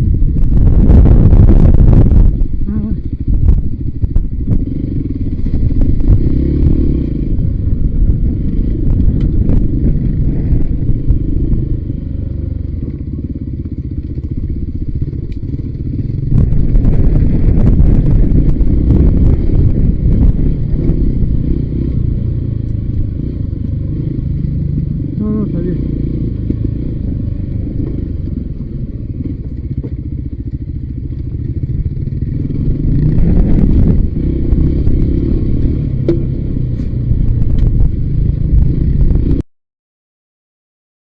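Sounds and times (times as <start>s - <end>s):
motorcycle engine: 0.0s - 39.4s
wind rumble on microphone: 0.0s - 39.4s
stones and bike clattering: 36.0s - 37.8s.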